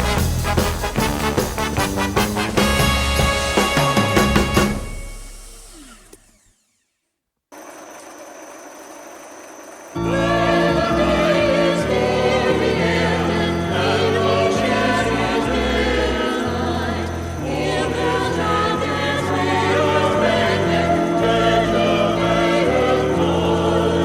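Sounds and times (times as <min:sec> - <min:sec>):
music with choir singing: 0:00.0 - 0:04.9, 0:10.0 - 0:24.0.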